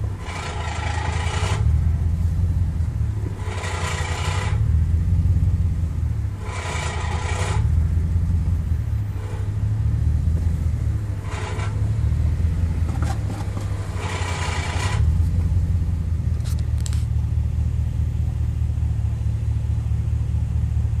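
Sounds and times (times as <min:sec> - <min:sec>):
truck engine rumble: 0:00.0 - 0:21.0
raspy scraping noise: 0:00.2 - 0:02.4, 0:03.2 - 0:04.6, 0:06.4 - 0:07.8, 0:11.2 - 0:15.6.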